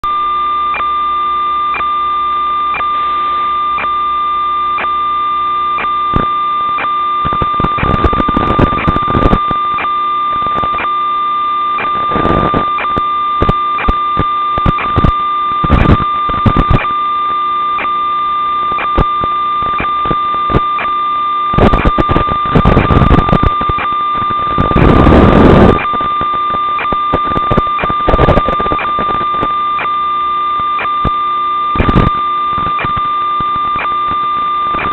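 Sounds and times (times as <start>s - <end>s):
electronic whine with ticks: 0.0s - 34.9s
static hiss bursts: 5.8s - 10.9s, 11.7s - 16.9s, 18.7s - 29.9s, 31.8s - 34.9s.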